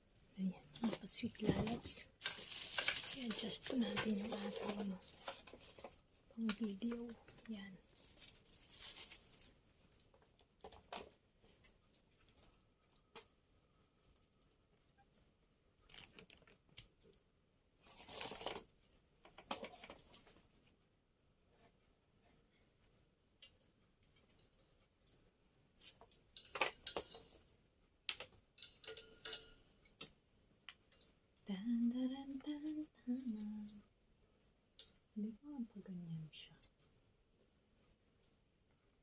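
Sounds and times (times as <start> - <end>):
small parts clicking and tapping: 25.8 - 31.2.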